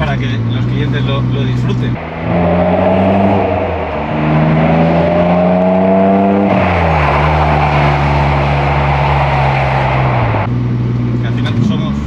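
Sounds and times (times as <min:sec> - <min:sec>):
car engine accelerating: 0:01.9 - 0:10.5.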